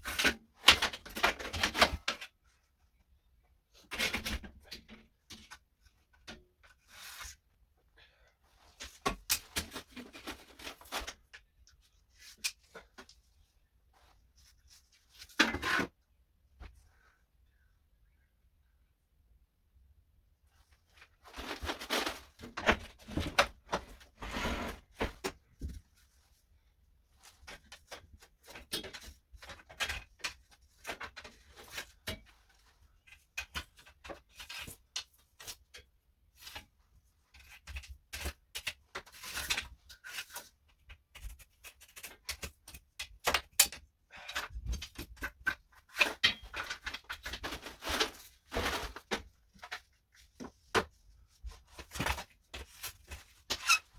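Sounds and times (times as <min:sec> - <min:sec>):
building materials scraping: 0:21.3 - 0:25.2.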